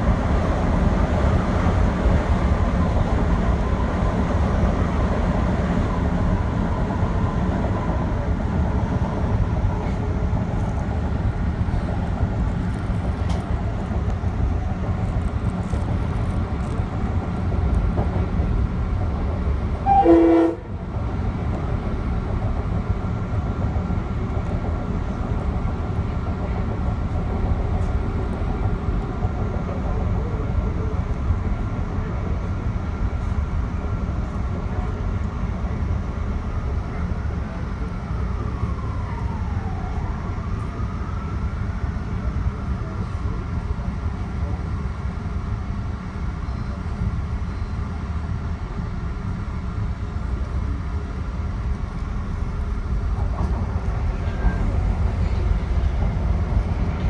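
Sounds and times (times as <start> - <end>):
train rumbling on rails: 0.0 - 57.0
train horn toot: 19.8 - 20.8.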